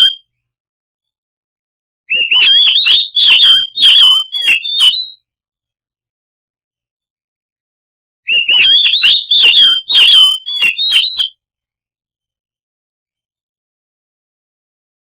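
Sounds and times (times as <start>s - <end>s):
bird singing: 2.1s - 5.2s, 8.3s - 11.3s.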